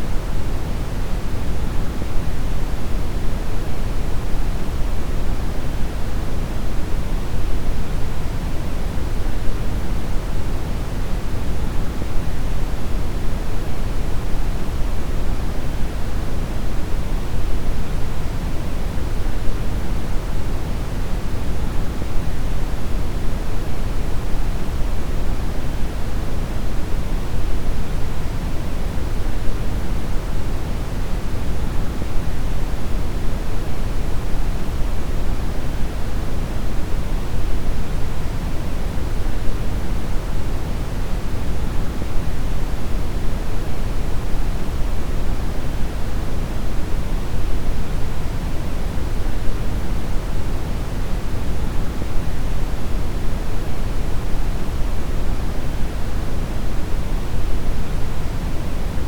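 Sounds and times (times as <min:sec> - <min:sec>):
brown noise hiss: 0:00.0 - 0:59.0.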